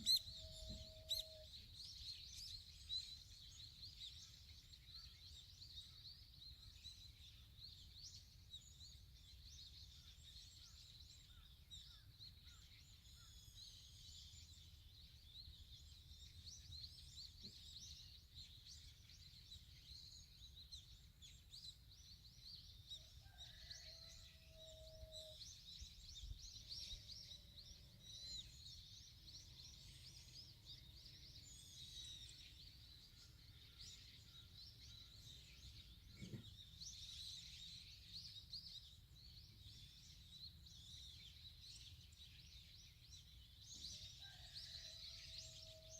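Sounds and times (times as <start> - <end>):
low drawn-out bird call: 0.0 - 1.6
small birds chirping: 0.0 - 45.0.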